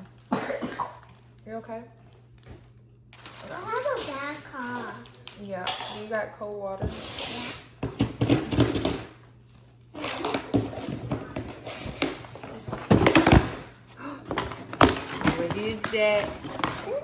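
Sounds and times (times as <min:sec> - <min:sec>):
gift packaging rustling: 0:02.0 - 0:05.6, 0:07.2 - 0:17.0
knocks and thumps: 0:10.4 - 0:13.7, 0:14.3 - 0:17.0.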